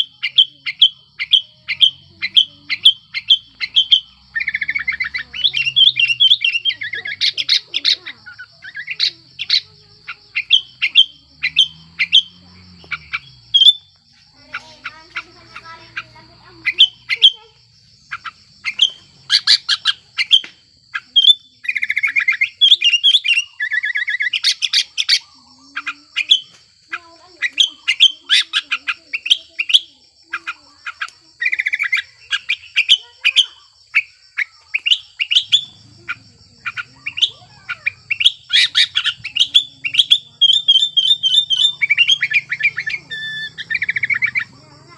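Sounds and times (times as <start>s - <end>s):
bulbul chirping and singing: 0.0s - 44.9s.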